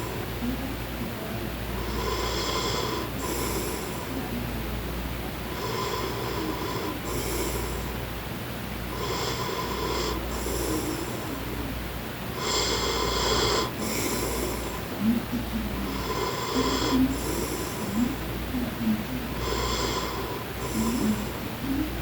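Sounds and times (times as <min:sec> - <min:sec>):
man snoring: 0:09.0 - 0:11.4, 0:12.4 - 0:15.2, 0:15.9 - 0:18.2, 0:19.4 - 0:21.4.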